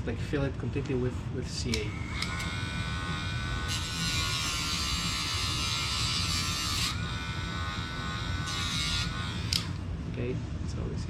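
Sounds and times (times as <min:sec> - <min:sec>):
cutting disc grinding metal: 0:01.6 - 0:10.0
rotary tool whining: 0:01.6 - 0:10.0.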